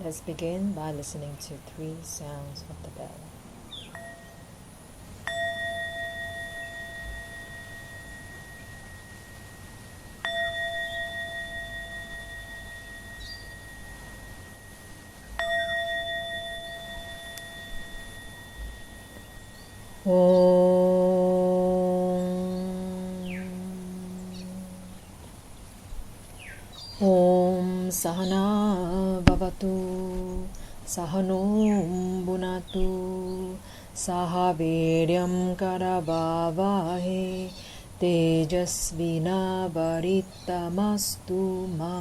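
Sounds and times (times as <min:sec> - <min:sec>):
low drone with overtones: 0:05.2 - 0:25.3
bell ringing: 0:05.3 - 0:20.5.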